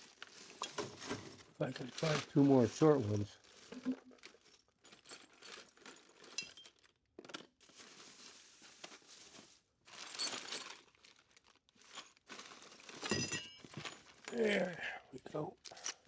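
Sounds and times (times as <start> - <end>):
rustling and crinkling: 0.0 - 16.0
small metallic clinks: 4.4 - 6.9, 13.0 - 14.6.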